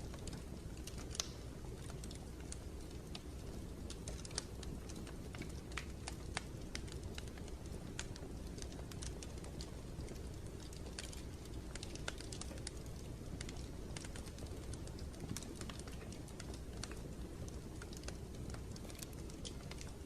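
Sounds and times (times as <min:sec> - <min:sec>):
sharp clicks and ticks: 0:00.3 - 0:01.4.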